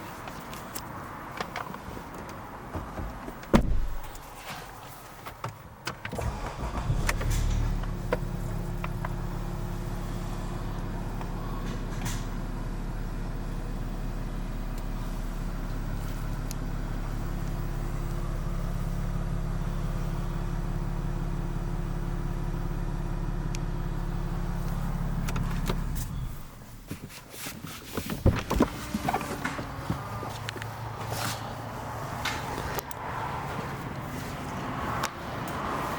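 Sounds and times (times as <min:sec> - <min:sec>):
car engine idling: 0:06.2 - 0:27.1.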